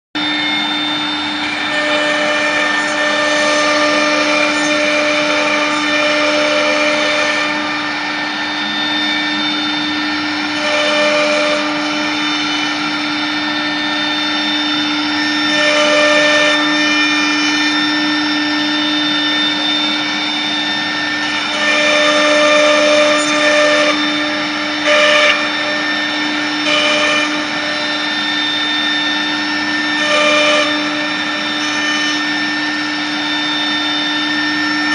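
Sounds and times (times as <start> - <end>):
router motor whine: 0.2 - 34.9.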